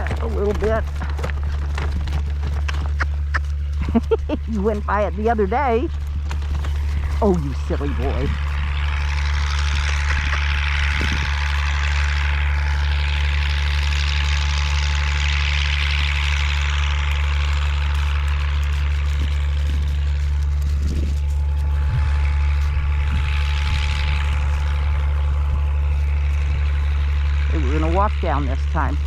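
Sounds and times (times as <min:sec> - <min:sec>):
strong wind buffeting microphone: 0:00.0 - 0:13.1, 0:18.1 - 0:29.0.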